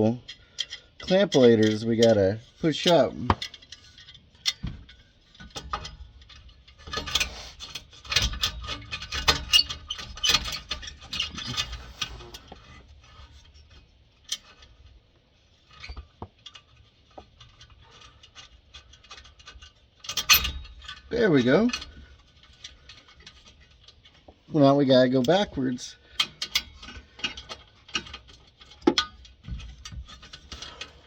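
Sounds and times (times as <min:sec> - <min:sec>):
metal clicks and clinks: 0:17.4 - 0:24.2.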